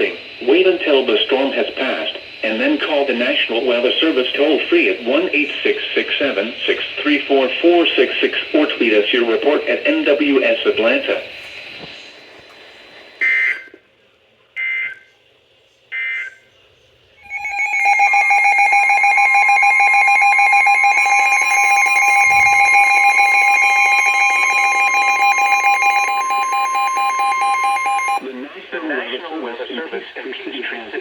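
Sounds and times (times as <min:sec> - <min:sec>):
data-burst header tones: 0:17.2 - 0:28.2
two-tone attention signal: 0:17.2 - 0:28.2.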